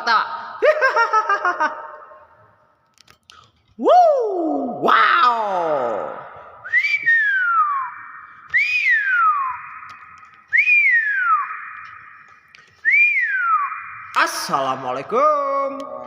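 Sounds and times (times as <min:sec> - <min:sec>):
bird whistling: 0:06.6 - 0:15.3.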